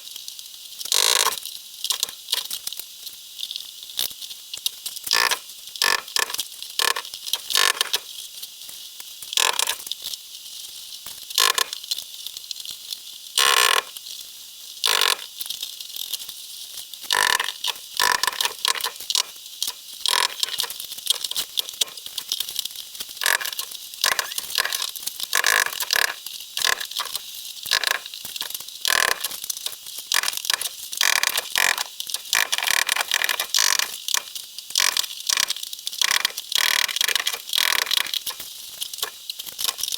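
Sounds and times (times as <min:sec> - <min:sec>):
hammer chipping cement board: 0:23.2 - 0:28.0.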